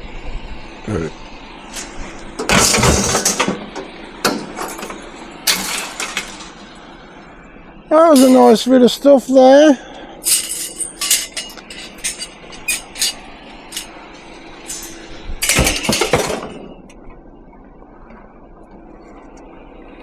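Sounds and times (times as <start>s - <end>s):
scrap metal clattering: 1.8s - 6.7s, 8.2s - 8.6s, 10.2s - 16.9s.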